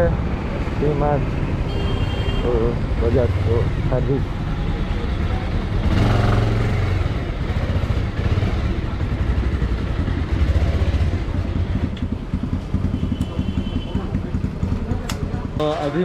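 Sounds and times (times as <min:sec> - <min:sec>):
motorcycle engine running: 0:03.1 - 0:15.6.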